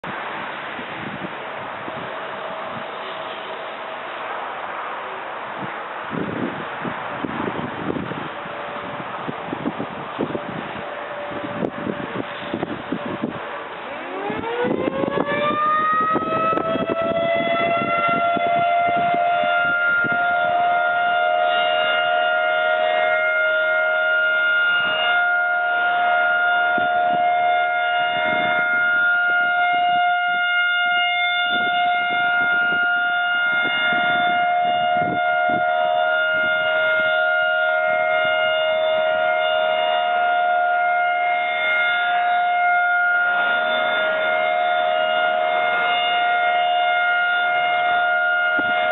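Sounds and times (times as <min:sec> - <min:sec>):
warning siren winding up: 0:11.4 - 0:48.9.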